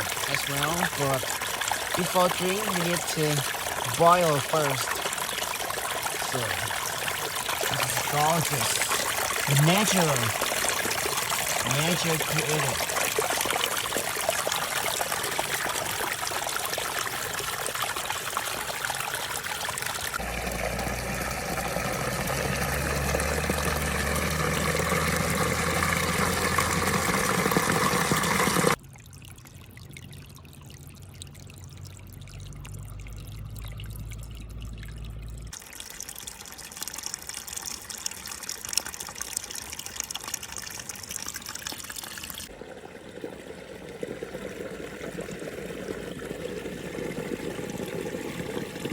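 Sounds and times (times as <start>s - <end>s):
small waterfall splashing: 0.0s - 28.8s.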